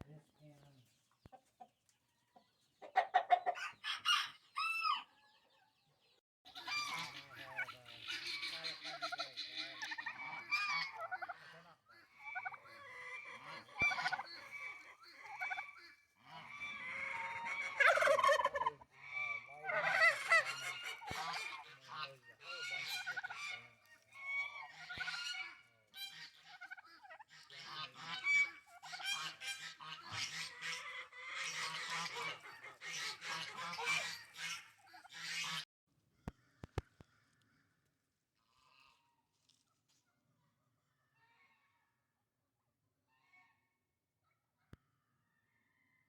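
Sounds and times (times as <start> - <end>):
poultry flock calling: 2.8 - 5.6, 6.5 - 35.6.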